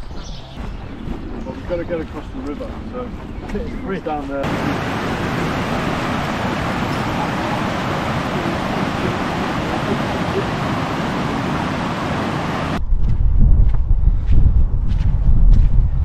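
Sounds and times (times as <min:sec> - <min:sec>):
wind buffeting the microphone: 0:00.0 - 0:16.0
river water rushing: 0:04.4 - 0:12.8.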